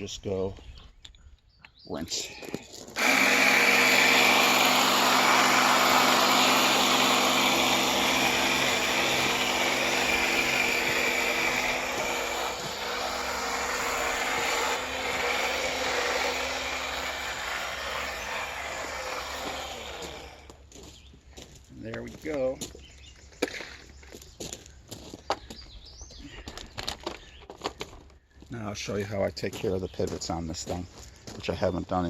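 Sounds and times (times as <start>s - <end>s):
pump motor hum: 3.0s - 20.5s.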